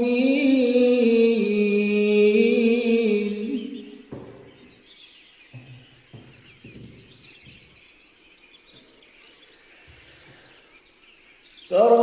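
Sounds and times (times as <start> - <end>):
small bird chirps: 3.6 - 12.0
soft low thuds: 4.0 - 4.9, 5.5 - 7.9.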